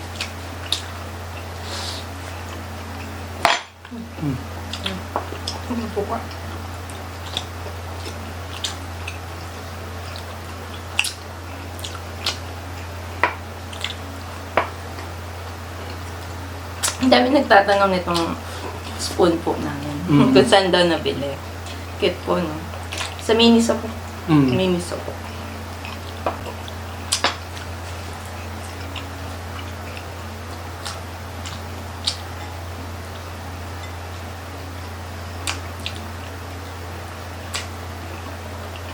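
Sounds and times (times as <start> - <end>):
steady low hum: 0.0 - 38.9
eating clicks and smacks: 7.2 - 9.2, 10.0 - 15.1, 15.8 - 17.0, 25.8 - 32.4, 35.4 - 36.3, 37.4 - 38.9
wet mouth clicks and smacks: 30.8 - 32.3, 37.5 - 37.7.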